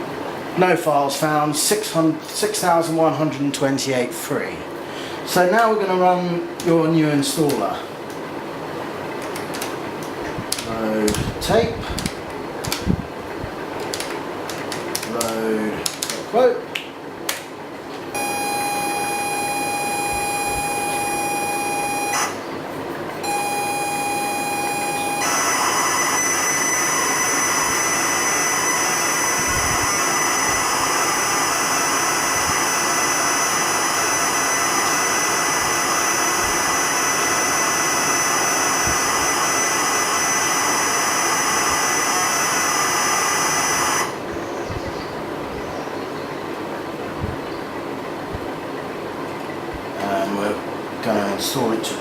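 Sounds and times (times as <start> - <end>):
high pilot tone: 18.1 - 44.3
hissing data screech: 18.2 - 22.5, 23.2 - 44.2.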